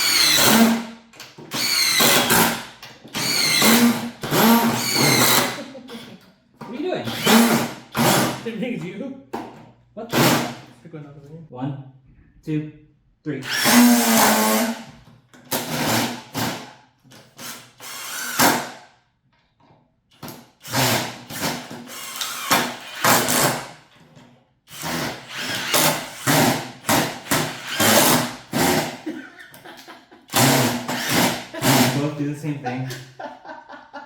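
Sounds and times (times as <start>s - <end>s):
impact drivers driving screws: 0.0s - 5.6s, 7.1s - 8.4s, 13.4s - 18.8s, 20.1s - 24.0s, 24.7s - 29.0s, 30.3s - 32.0s.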